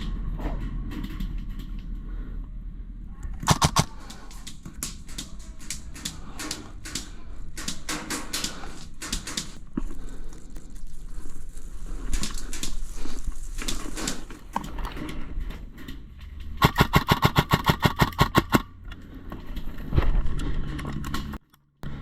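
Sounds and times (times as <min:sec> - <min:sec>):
airsoft gun rapid burst: 0:03.4 - 0:03.9, 0:16.6 - 0:18.6
rustling: 0:03.4 - 0:16.8.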